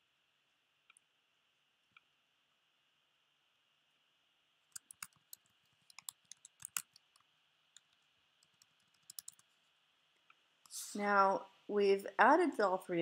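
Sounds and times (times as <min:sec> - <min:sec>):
typing on computer keyboard: 0:04.7 - 0:09.5.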